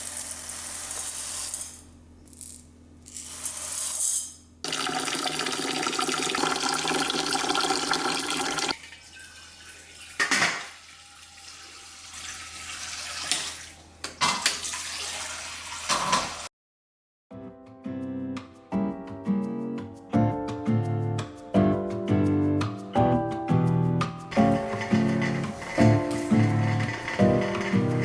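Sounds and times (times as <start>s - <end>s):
kitchen tap running: 4.6s - 16.5s, 24.3s - 28.0s.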